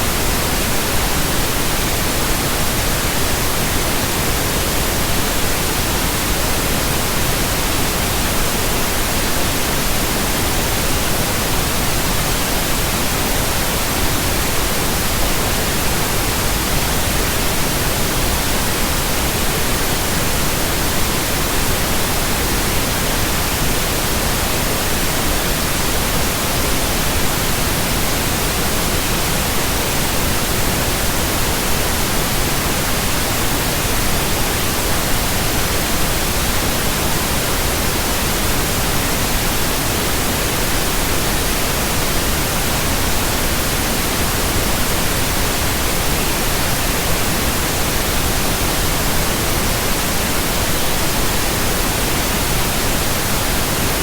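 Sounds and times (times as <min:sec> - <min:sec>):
steady pink noise hiss: 0:00.0 - 0:54.0.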